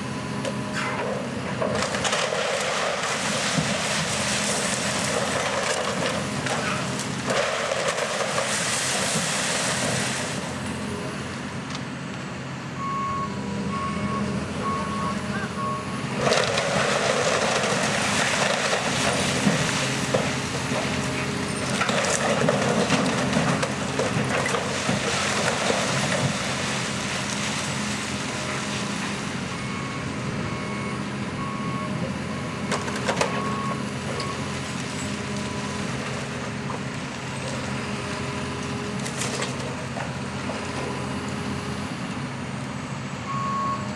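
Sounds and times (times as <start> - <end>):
heavy demolition machinery running: 0.0 - 43.9
wood crunching and breaking: 1.6 - 10.2, 16.2 - 28.8
reversing alarm beeping: 12.8 - 16.1, 28.8 - 34.6, 43.2 - 43.9.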